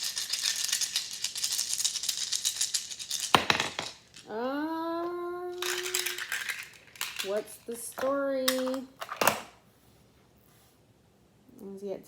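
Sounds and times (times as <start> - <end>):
cards being shuffled: 5.5 - 9.4.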